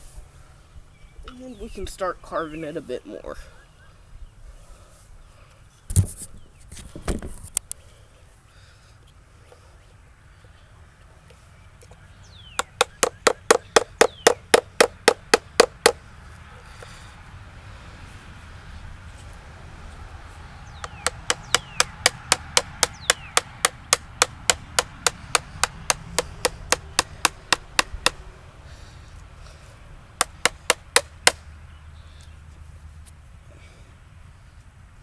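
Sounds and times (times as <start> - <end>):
mallet striking wood chisel: 12.6 - 16.0, 20.8 - 28.2, 30.2 - 31.4.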